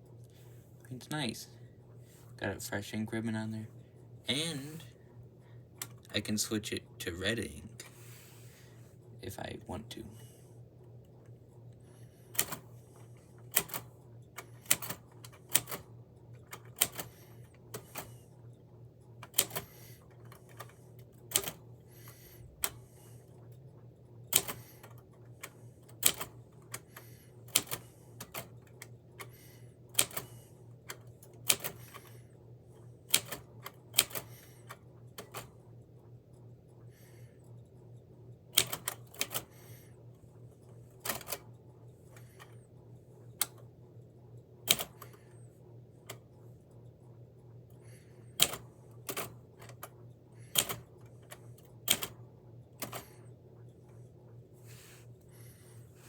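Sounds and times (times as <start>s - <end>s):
steady low hum: 0.0s - 56.0s
typewriter key strikes: 51.9s - 52.1s.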